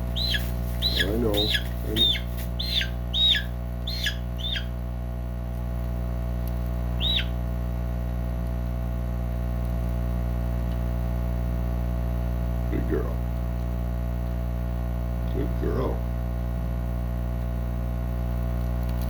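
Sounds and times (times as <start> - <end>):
hen squawking: 0.0 - 4.8, 7.0 - 7.4
low hum: 0.0 - 18.8.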